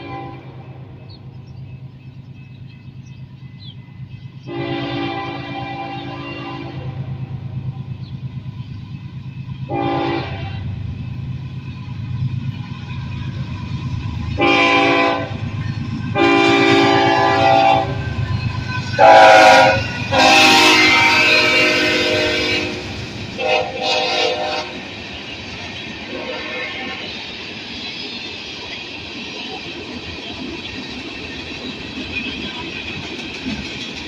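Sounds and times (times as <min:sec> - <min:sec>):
train air horn blasts: 0:00.0 - 0:00.8, 0:04.4 - 0:07.5, 0:09.7 - 0:10.9, 0:14.3 - 0:15.4, 0:16.1 - 0:24.9, 0:26.1 - 0:27.2
diesel locomotive engines rumbling: 0:00.0 - 0:34.0.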